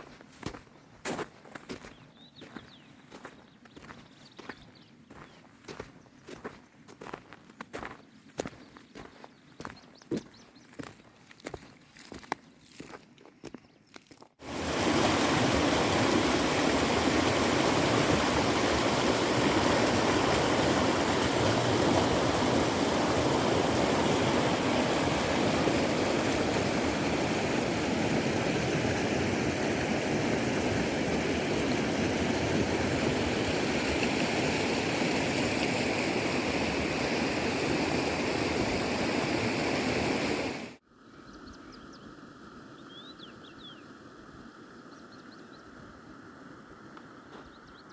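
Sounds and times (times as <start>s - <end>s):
river rushing over rocks: 14.4s - 40.8s.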